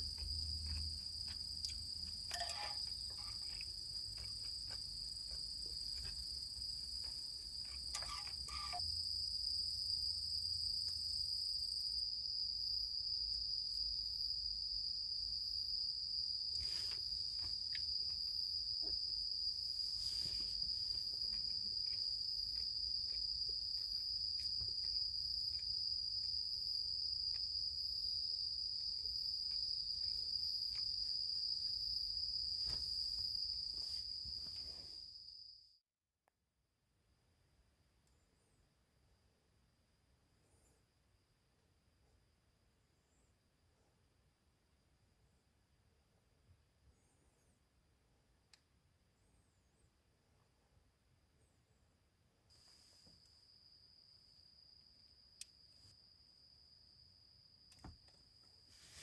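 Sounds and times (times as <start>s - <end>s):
crickets trilling: 0.0s - 35.4s.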